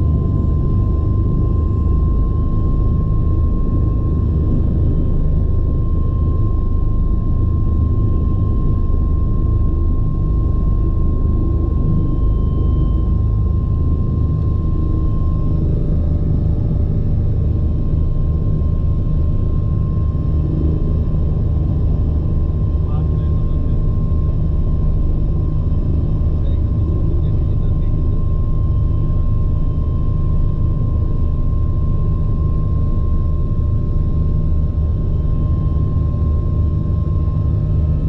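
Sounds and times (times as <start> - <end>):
helicopter rotor and engine rumble: 0.0 - 38.0
high turbine whine: 0.0 - 38.0.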